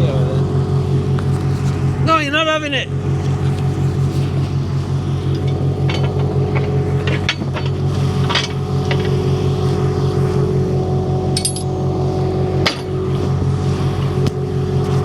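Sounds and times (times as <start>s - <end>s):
tractor engine running: 0.0s - 15.0s
metallic clinks and knocks: 5.3s - 9.2s, 11.3s - 11.8s.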